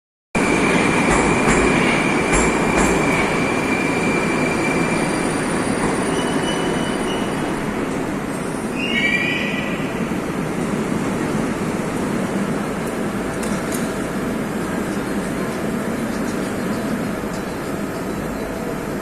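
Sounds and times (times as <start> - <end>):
train clunks: 0.4 - 8.5, 12.7 - 19.0
wheel and rail rumble: 9.9 - 19.0.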